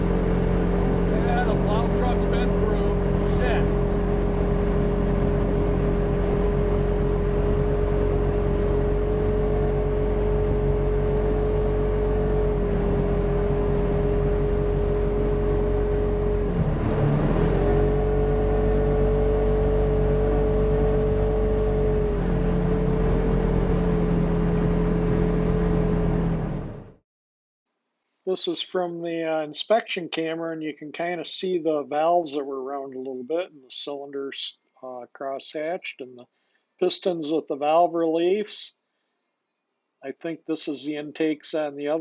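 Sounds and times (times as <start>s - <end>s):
engine running with steady drone: 0.0s - 27.0s.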